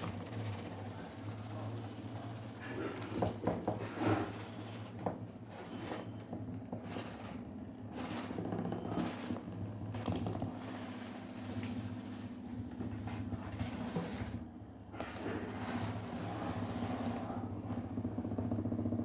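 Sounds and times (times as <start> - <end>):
small fan motor humming: 0.0 - 19.0.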